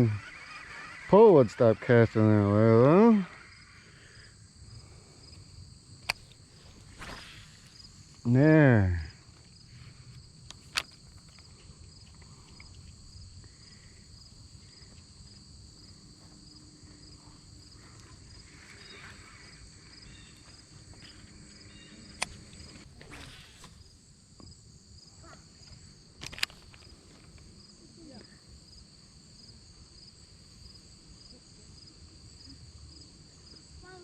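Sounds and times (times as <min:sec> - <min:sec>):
insects chirring: 0:00.0 - 0:34.0
sharp clicks: 0:06.0 - 0:06.4, 0:26.2 - 0:27.4.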